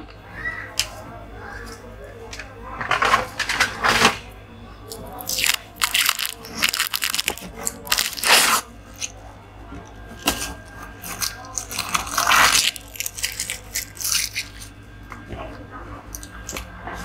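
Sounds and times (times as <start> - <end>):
faint steady hum: 0.0 - 17.0
plastic and metal parts handled: 5.2 - 9.1.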